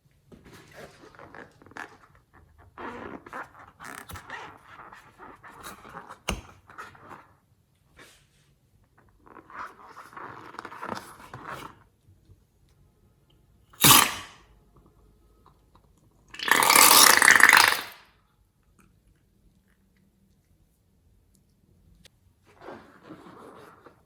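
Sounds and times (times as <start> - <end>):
sharp pop: 13.8 - 14.4.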